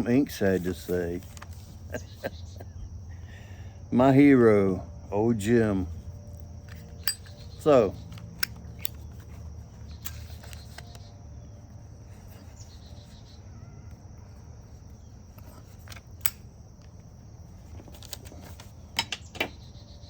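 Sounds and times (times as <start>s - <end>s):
insects chirring: 0.0s - 20.0s.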